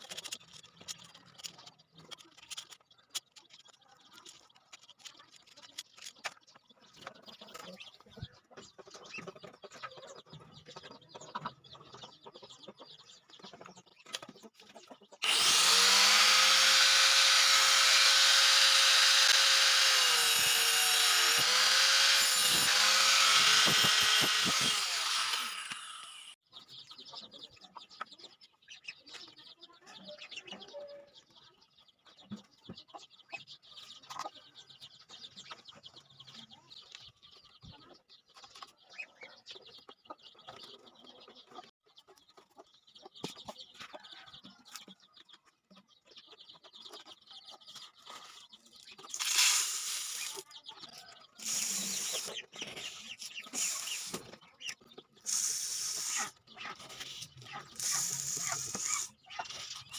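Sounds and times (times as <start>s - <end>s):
small clicks and scratching: 0.0s - 7.9s
chickens clucking: 0.0s - 15.2s, 26.4s - 59.9s.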